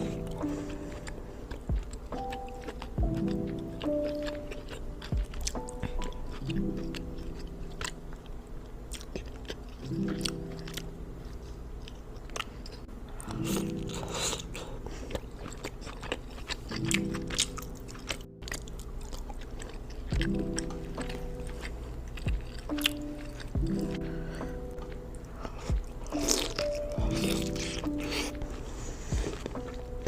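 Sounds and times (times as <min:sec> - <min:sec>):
background music: 0:00.0 - 0:12.1, 0:12.9 - 0:30.0
close chewing and crunching: 0:00.0 - 0:30.0.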